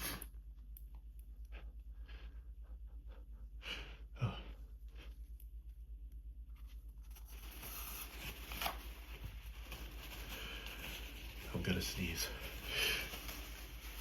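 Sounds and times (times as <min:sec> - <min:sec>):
person gasping breaths: 0:01.5 - 0:05.2, 0:12.2 - 0:13.4.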